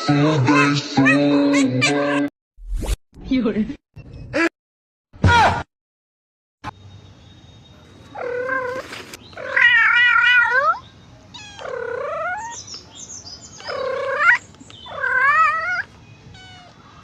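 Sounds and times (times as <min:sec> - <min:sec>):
cat yowling: 0:08.1 - 0:12.6, 0:13.6 - 0:17.0.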